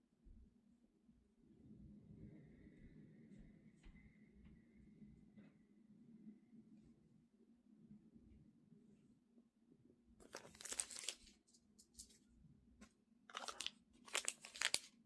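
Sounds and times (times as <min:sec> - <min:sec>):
plastic wrapping crinkling: 0:10.2 - 0:12.2, 0:13.3 - 0:15.0.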